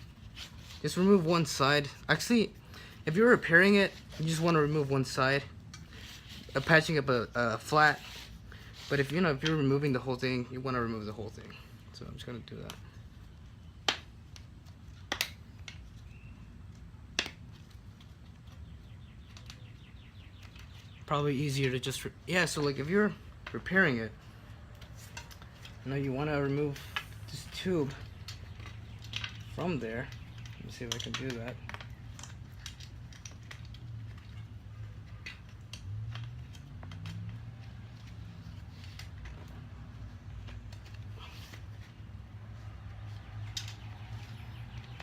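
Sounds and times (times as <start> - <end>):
hands clicking and rustling tire: 0.0 - 45.0.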